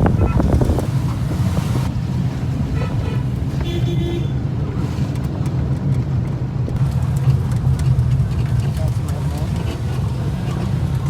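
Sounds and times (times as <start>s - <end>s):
engine running steadily: 0.0s - 11.0s
short horn toot: 2.7s - 4.4s.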